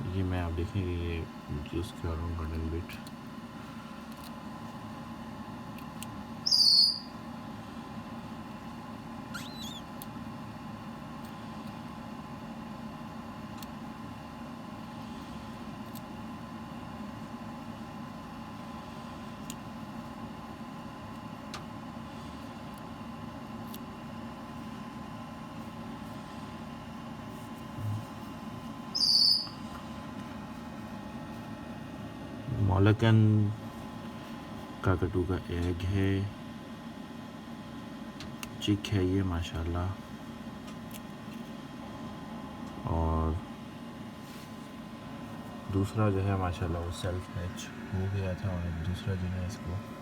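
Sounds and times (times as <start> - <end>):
steady electrical hum: 0.0 - 50.0
cockatoo chick squeaky peeps: 6.4 - 7.1, 9.3 - 9.9, 29.0 - 29.6.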